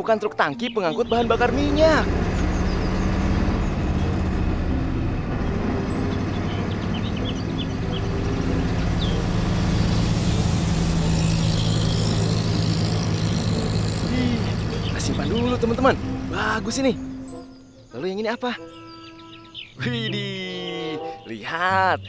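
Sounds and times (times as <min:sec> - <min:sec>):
truck engine running: 0:01.0 - 0:17.7.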